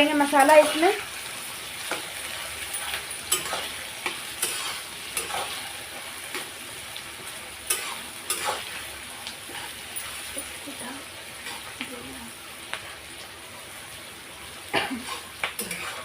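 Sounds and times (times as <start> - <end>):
onions sizzling in hot oil: 0.0 - 16.0
spatula scraping a pan: 1.8 - 6.5, 7.7 - 10.0, 15.0 - 16.0.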